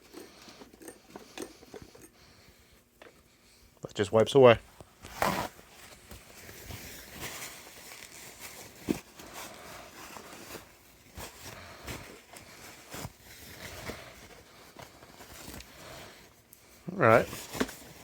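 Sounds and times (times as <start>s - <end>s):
steel parts clicking and knocking: 0.0s - 2.2s
rubbing and rustling: 4.9s - 18.0s.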